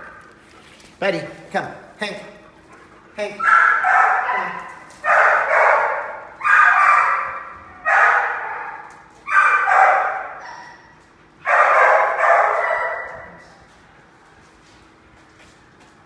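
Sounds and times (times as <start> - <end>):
dog barking: 3.2 - 13.5.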